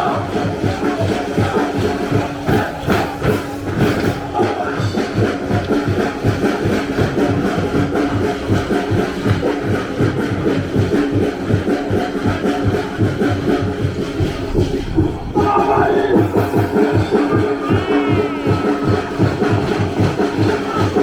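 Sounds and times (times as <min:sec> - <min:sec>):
fast low drum strikes: 0:05.2 - 0:20.5
sustained tone: 0:13.9 - 0:19.8.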